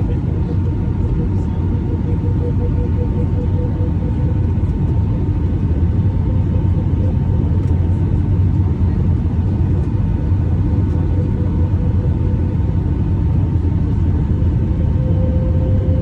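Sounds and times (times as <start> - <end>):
airliner cabin rumble: 0.0 - 16.0
faint steady hum: 0.0 - 16.0.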